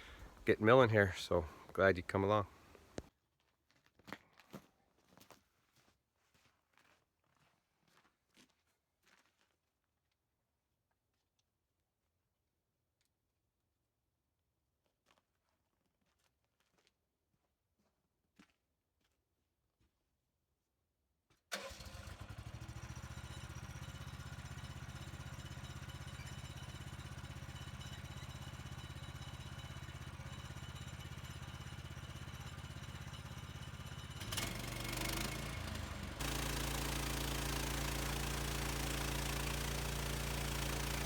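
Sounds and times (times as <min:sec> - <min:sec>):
small gasoline engine running: 0:21.5 - 0:41.0.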